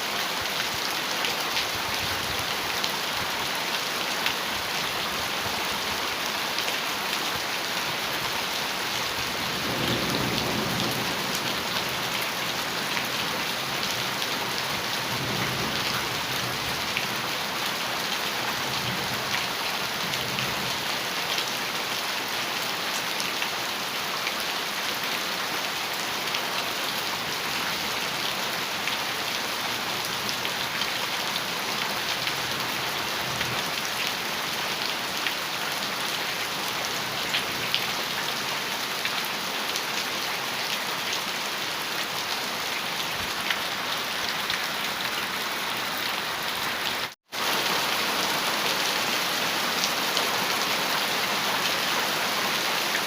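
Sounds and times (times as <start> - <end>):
heavy rain on metal roof: 0.0 - 53.0
thunder rumbling: 9.4 - 12.1.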